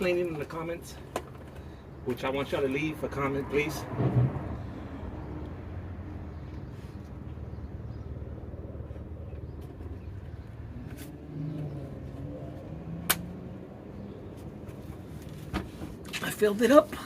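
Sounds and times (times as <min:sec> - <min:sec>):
sharp click: 0:13.1 - 0:13.3.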